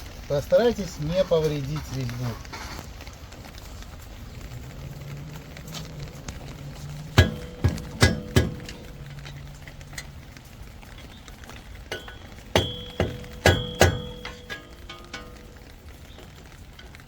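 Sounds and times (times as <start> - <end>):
hammer striking metal: 7.2 - 8.9, 11.9 - 15.5.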